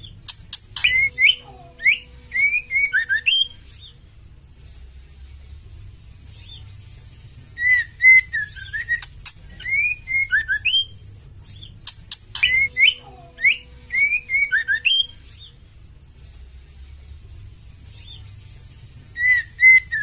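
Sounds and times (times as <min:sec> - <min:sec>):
bird whistled calls and clicks: 0:00.0 - 0:04.0, 0:07.5 - 0:15.5, 0:17.9 - 0:20.0.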